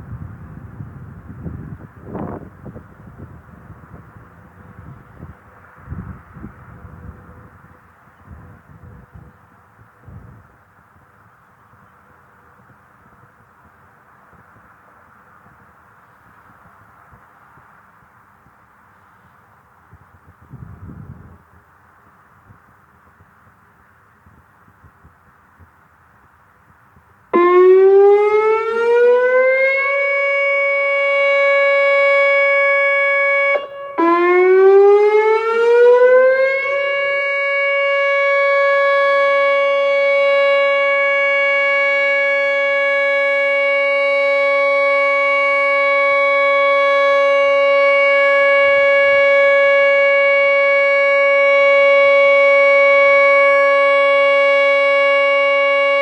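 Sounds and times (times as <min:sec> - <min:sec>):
warning siren: 0:27.3 - 0:56.0.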